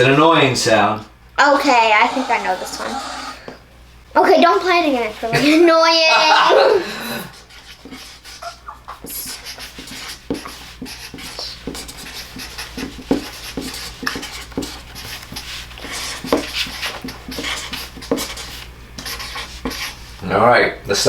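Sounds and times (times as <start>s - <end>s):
steady low hum: 0.0s - 21.0s
pen scratching while writing: 7.4s - 20.0s.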